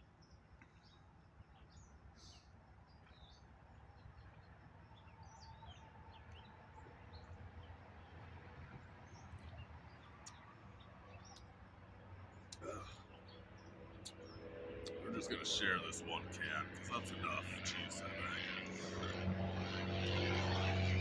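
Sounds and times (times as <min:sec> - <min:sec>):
steady low rumble: 0:13.8 - 0:21.0.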